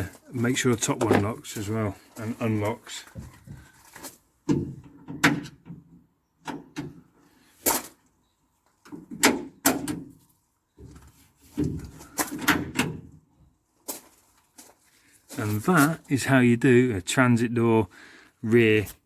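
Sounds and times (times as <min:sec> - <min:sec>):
door lock clicks and clunks: 0:12.3 - 0:13.1.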